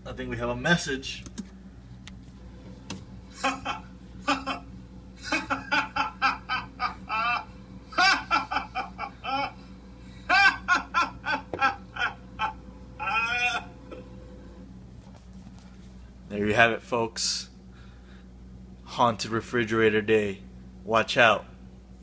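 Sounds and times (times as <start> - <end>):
steady low hum: 0.0 - 22.0
person laughing: 3.3 - 14.2.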